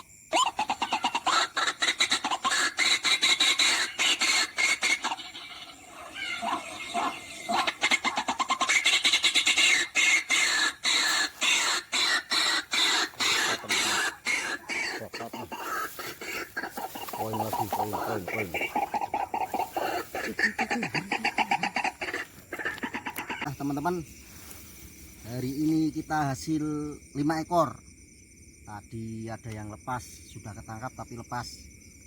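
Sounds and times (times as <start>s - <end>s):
birds squawking harshly: 0.3s - 24.7s.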